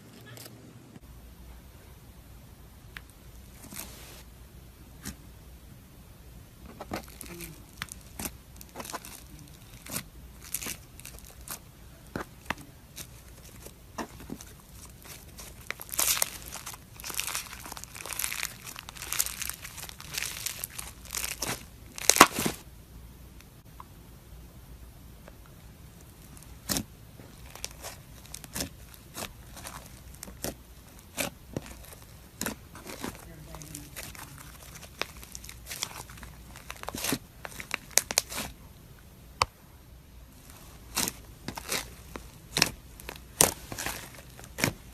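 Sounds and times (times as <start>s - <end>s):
slime crackling and popping: 6.8s - 22.6s, 26.0s - 38.6s, 40.4s - 44.9s.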